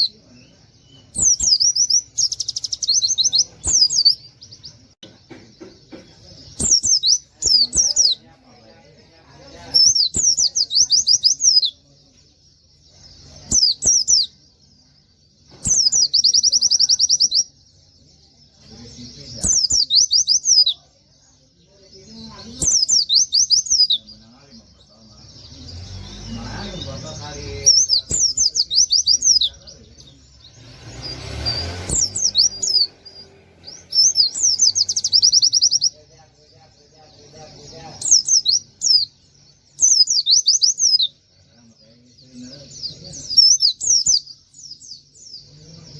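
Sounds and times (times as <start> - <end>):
bird singing high rapid trills: 0.0 - 45.9.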